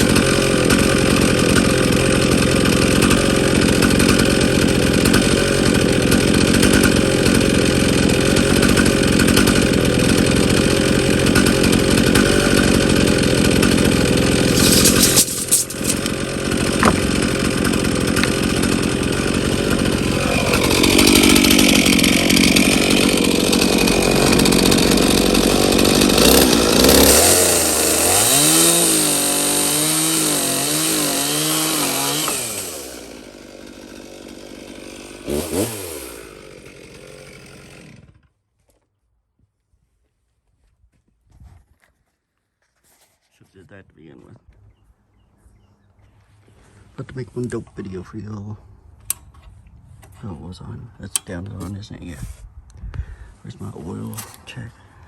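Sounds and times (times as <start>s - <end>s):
chainsaw cutting wood: 0.0s - 38.4s.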